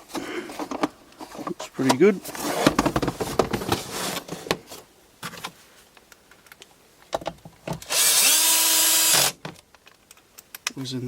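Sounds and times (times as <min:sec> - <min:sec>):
power drill driving a screw: 0:07.8 - 0:09.4
parts clicking: 0:09.2 - 0:10.8.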